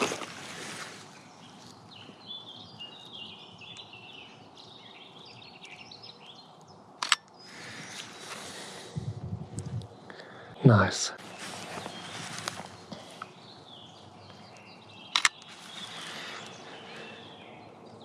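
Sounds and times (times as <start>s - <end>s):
outdoor background noise: 0.0s - 18.0s
small birds chirping: 0.0s - 18.0s
sharp click: 7.0s - 7.4s, 15.1s - 15.5s.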